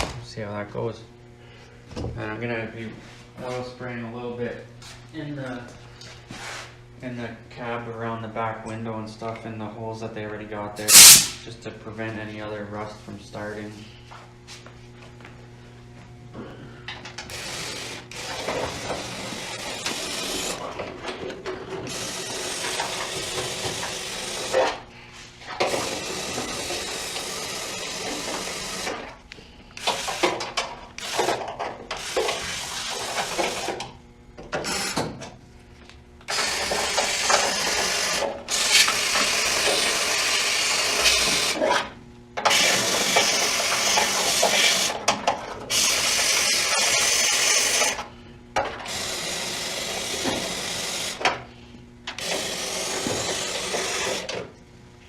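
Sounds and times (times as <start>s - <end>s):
aerosol spray can hissing: 10.9s - 11.4s.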